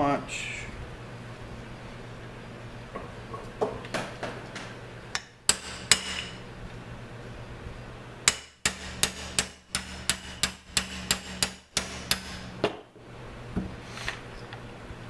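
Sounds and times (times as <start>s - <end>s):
hammer tapping steel punch: 5.1s - 6.4s, 8.2s - 12.8s.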